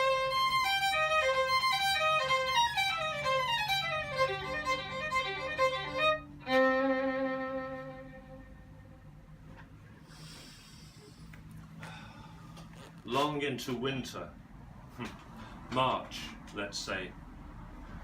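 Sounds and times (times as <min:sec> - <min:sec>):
violin playing quick melody: 0:00.0 - 0:08.8.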